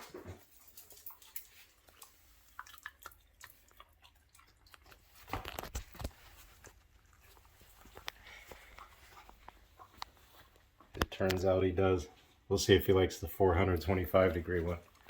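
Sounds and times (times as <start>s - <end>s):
small wet clicks: 0.8s - 11.4s
dog chewing: 0.9s - 10.6s.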